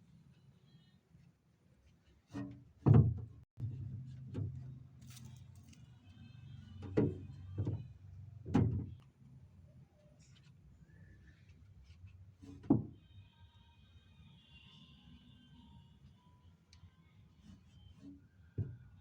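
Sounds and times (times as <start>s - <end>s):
knocks and thuds of items: 2.4s - 4.7s, 6.8s - 9.0s, 12.5s - 13.0s
low refrigerator hum: 2.8s - 19.0s.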